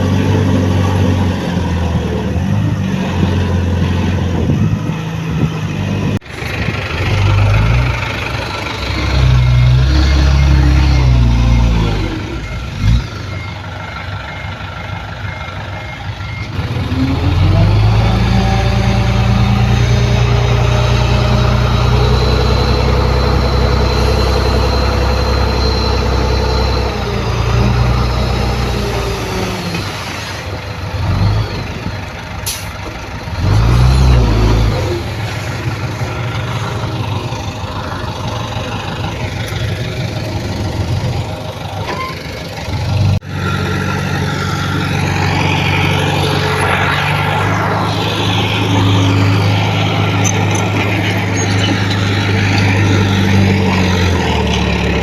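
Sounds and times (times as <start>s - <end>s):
heavy diesel engine revving: 0.0s - 55.0s
reversing beeper: 7.0s - 31.8s, 43.2s - 55.0s.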